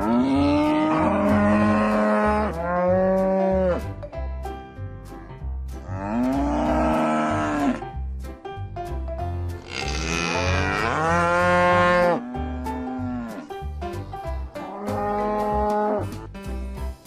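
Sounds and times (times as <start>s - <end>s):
cattle mooing: 0.0s - 3.8s, 6.0s - 7.8s, 9.7s - 13.4s.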